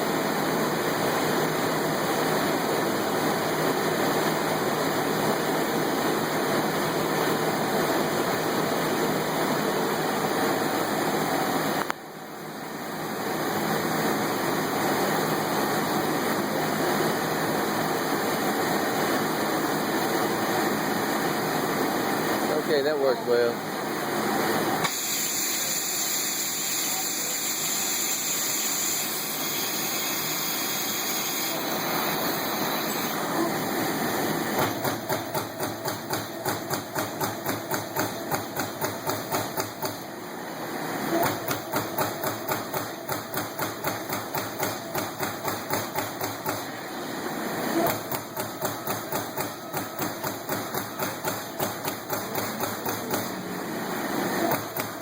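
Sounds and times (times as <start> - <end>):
punch press hum: 31.5 - 40.1, 41.1 - 55.0
punch press ram striking: 34.5 - 40.0, 41.1 - 46.7, 47.8 - 53.4.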